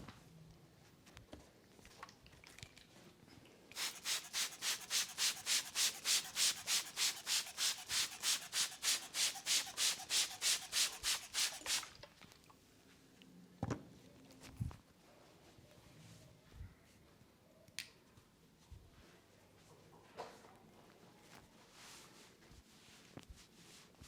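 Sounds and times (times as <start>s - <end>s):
hands rubbing head: 3.7s - 11.9s.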